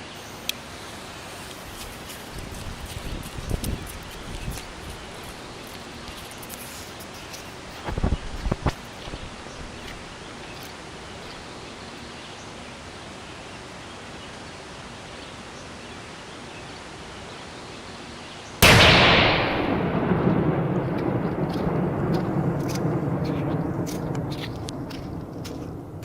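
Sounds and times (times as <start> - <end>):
loud firecracker blast with echo: 18.6 - 25.8.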